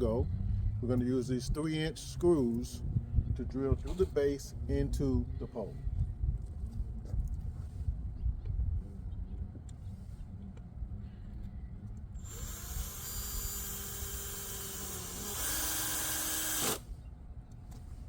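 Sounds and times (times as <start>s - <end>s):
power drill driving screw: 12.2s - 16.8s.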